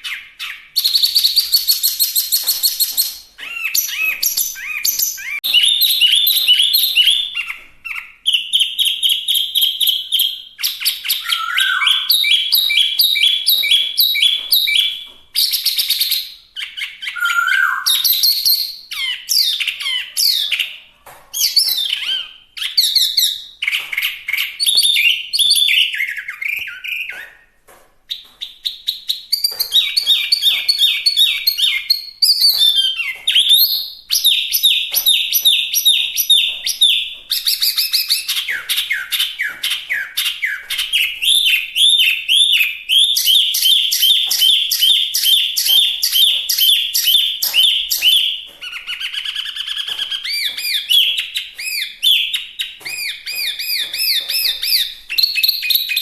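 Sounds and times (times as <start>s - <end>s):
songbird singing: 0.0s - 20.8s.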